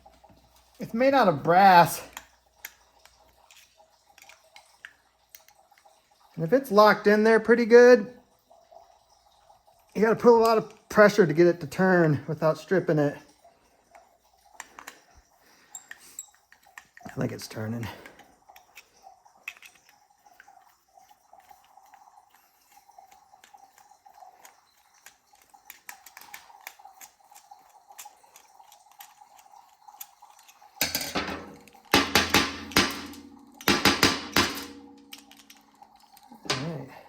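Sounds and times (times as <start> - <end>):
metallic clattering and clinking: 30.1 - 37.0.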